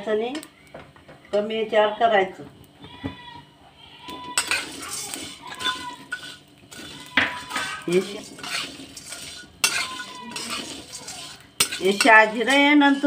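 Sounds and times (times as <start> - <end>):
metal spatula scraping a pan: 4.1 - 13.0.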